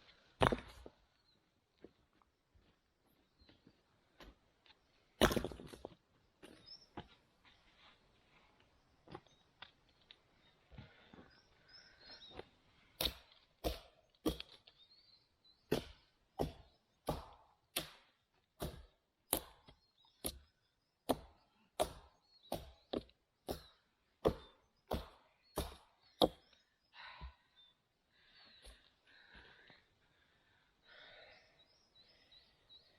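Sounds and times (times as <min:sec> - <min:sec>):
hatchet chopping wood: 0:13.0 - 0:14.6, 0:15.7 - 0:26.5.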